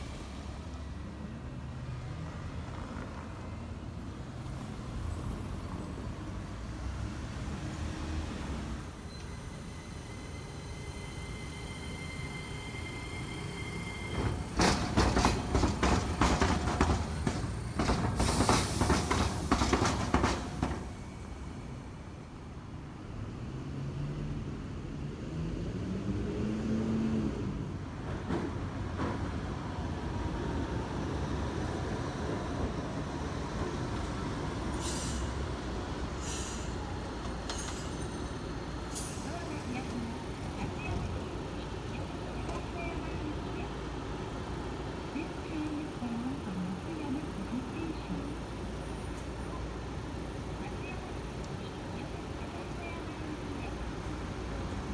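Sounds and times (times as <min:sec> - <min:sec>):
train wheels clattering over rail gaps: 0:07.6 - 0:22.0, 0:27.8 - 0:47.4
high wheel screech: 0:09.1 - 0:21.0.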